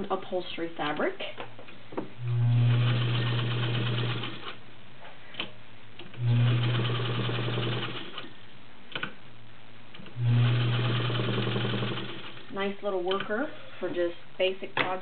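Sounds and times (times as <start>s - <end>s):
sewing machine stitching: 2.4s - 4.6s, 6.1s - 8.3s, 10.2s - 12.5s.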